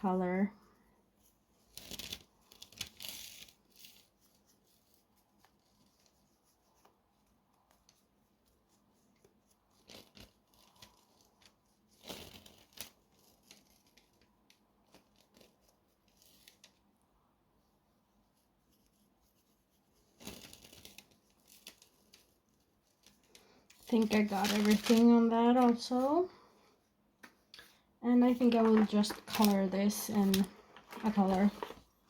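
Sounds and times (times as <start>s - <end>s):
rustling of small objects: 1.2s - 6.2s, 19.9s - 32.0s.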